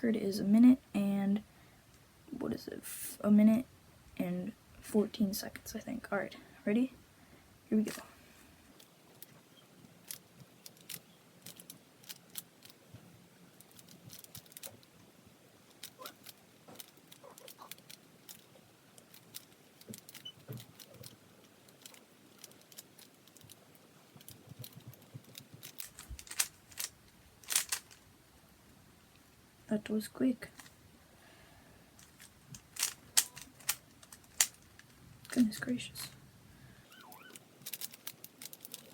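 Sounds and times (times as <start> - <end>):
puzzle cube layers clicking: 10.0 - 12.9, 13.6 - 15.0, 15.7 - 28.0, 32.0 - 35.6, 37.6 - 38.9.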